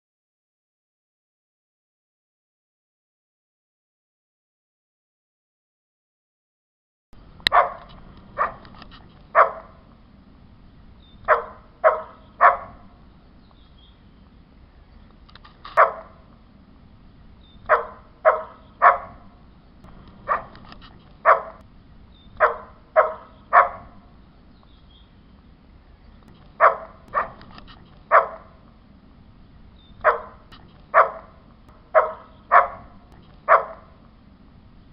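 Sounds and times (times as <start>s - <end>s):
faint low background hum: 7.2s - 34.9s
dog barking: 7.5s - 8.7s, 9.3s - 9.8s, 11.2s - 13.0s, 15.8s - 16.3s, 17.7s - 19.3s, 20.2s - 21.6s, 22.4s - 24.0s, 26.6s - 28.6s, 30.0s - 34.0s.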